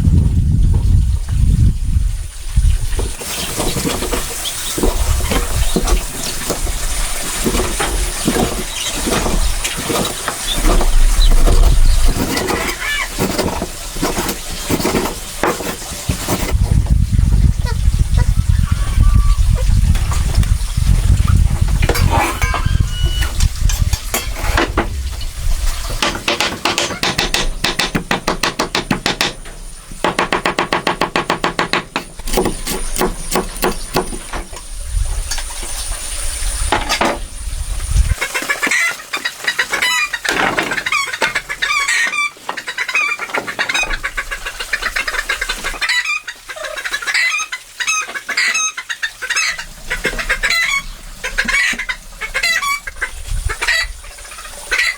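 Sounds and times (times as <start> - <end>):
chickens clucking: 2.8 - 34.4, 38.0 - 54.9
quick rhythmic knocks: 26.0 - 34.2.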